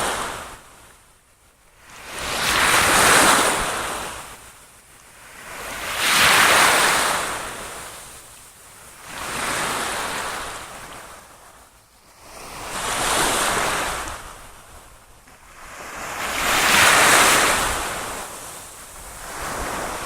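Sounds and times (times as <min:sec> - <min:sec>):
water waves washing in: 0:15.4 - 0:20.0.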